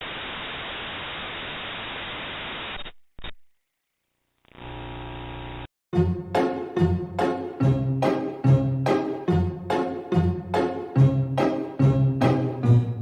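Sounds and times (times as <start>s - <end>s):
static hiss: 0.0s - 3.0s, 4.5s - 5.7s
buzzy hum: 4.5s - 5.7s.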